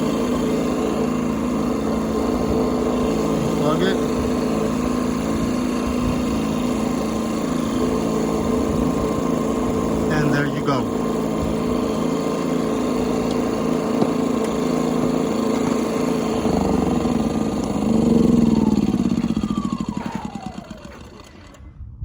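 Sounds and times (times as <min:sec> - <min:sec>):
generators humming: 0:00.0 - 0:21.7.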